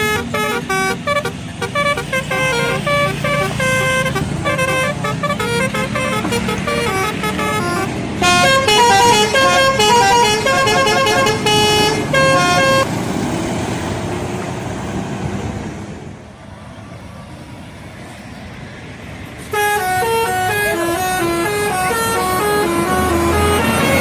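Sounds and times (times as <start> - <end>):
musical bus air horn: 0.0 - 12.9, 19.4 - 24.0.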